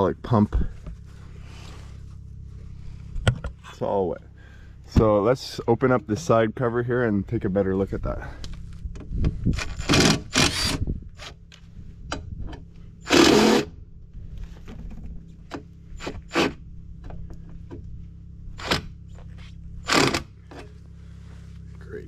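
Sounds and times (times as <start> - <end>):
power tool bursts: 9.6 - 11.3, 13.0 - 13.7, 19.8 - 20.4.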